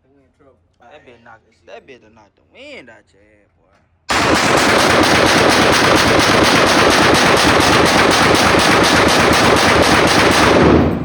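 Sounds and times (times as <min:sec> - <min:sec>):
rapid gunshots: 0:04.1 - 0:11.0.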